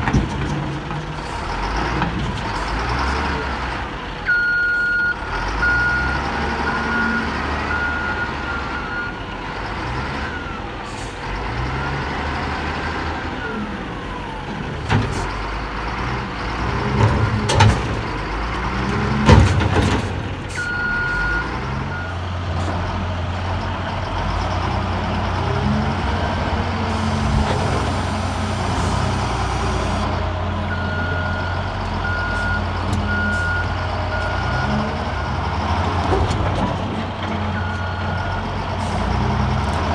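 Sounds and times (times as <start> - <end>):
heavy machinery diesel engine: 0.0 - 39.9
reversing alarm beeping: 4.3 - 9.2, 20.6 - 22.2, 30.7 - 35.4.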